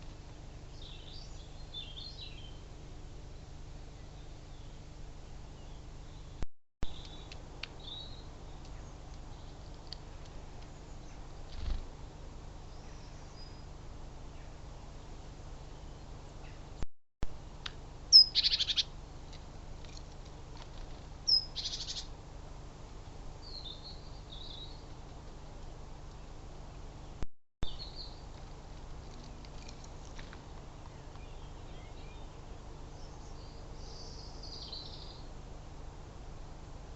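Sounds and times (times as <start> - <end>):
small birds chirping: 3.9 - 11.8, 18.1 - 18.9, 21.2 - 22.1, 23.4 - 24.9, 27.0 - 35.3
high bird chirps: 18.1 - 18.9, 21.3 - 22.0
steady background hiss: 27.8 - 36.9.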